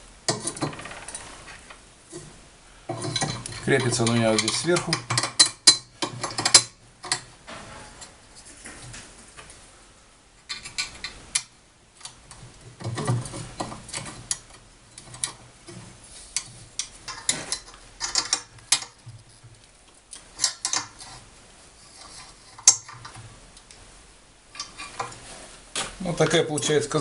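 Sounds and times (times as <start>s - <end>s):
small steel parts clinking: 16.4s - 19.0s.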